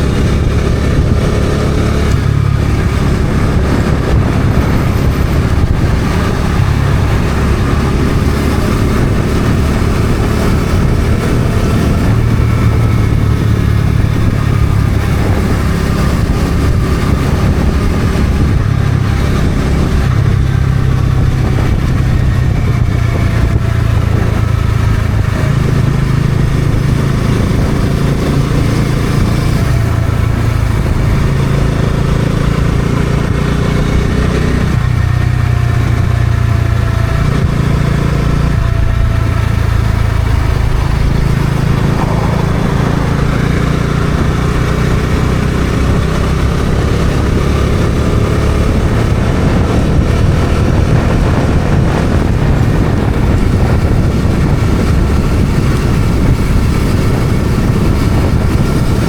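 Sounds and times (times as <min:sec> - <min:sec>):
motorcycle engine running: 0:00.0 - 0:59.0
wind noise: 0:00.0 - 0:59.0.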